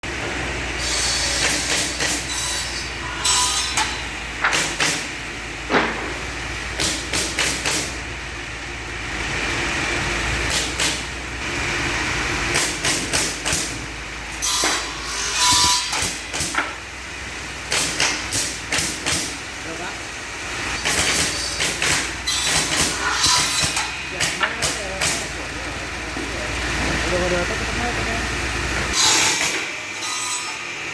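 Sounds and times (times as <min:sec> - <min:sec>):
sharp knocks: 0:05.7 - 0:07.9
wood-cutting machine humming: 0:19.4 - 0:30.9.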